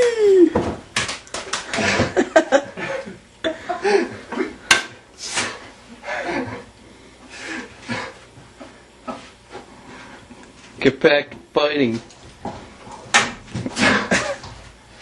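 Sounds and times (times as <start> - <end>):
laughter: 1.8 - 4.2.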